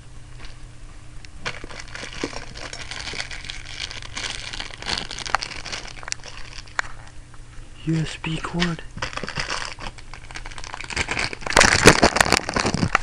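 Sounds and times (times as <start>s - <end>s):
faint steady hum: 0.0s - 13.0s
plastic packaging crinkling: 1.4s - 7.2s, 8.6s - 13.0s.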